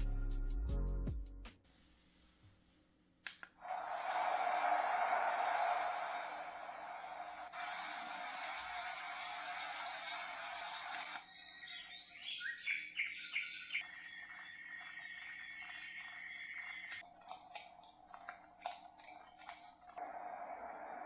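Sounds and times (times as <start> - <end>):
electronic bird-like chirps: 11.2 - 17.0.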